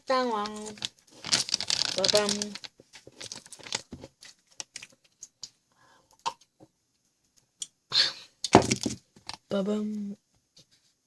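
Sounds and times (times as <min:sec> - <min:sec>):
chewing crunchy snacks: 0:00.4 - 0:03.9.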